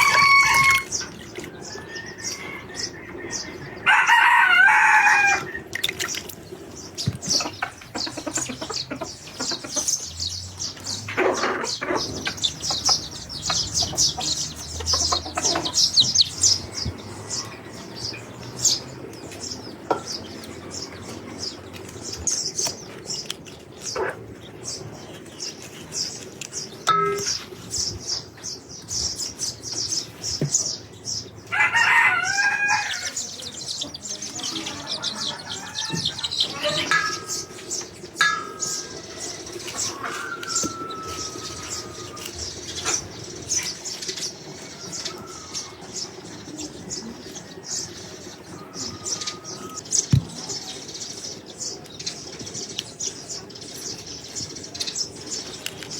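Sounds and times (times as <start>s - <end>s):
rooster crowing: 0.0s - 0.9s, 1.6s - 5.6s, 31.5s - 33.4s, 34.5s - 37.3s, 38.7s - 42.3s, 44.6s - 45.8s
chickens chirping: 0.0s - 55.9s.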